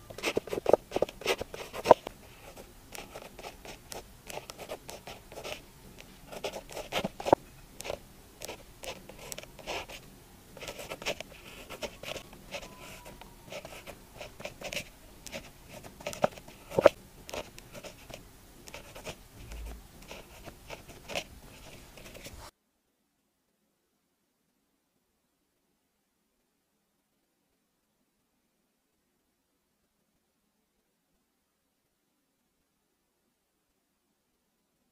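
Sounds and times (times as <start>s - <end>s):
pen tapping: 0.1s - 2.1s, 10.6s - 22.3s
pen writing on paper: 0.1s - 5.6s, 6.3s - 10.0s, 10.6s - 22.4s.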